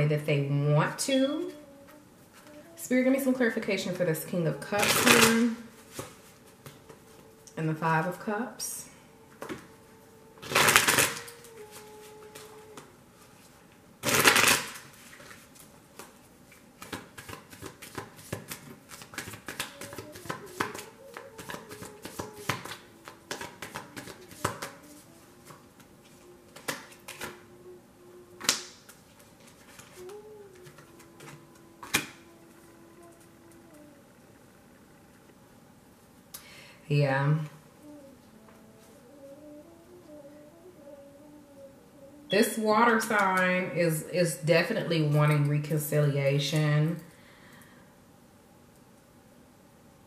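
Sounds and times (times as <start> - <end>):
cards riffling: 10.4 - 12.5, 14.0 - 27.5, 28.4 - 32.4
card flicks and snaps: 28.4 - 28.9.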